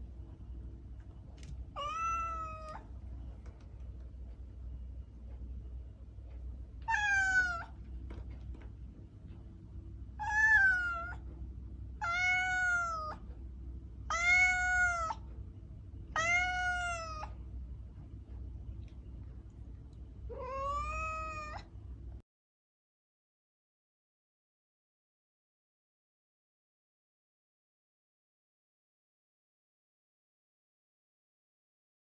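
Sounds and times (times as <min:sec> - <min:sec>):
steady low hum: 0:00.0 - 0:22.2
cat yowling: 0:01.8 - 0:02.9, 0:06.9 - 0:07.8, 0:10.2 - 0:11.2, 0:12.0 - 0:13.2, 0:14.1 - 0:15.2, 0:16.2 - 0:17.4, 0:20.3 - 0:21.7.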